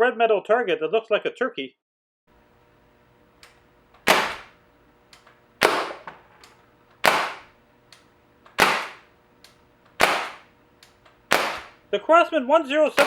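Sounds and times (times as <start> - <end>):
air rifle shots: 4.0 - 4.6, 5.6 - 6.1, 7.0 - 7.6, 8.6 - 9.1, 10.0 - 10.5, 11.3 - 11.8.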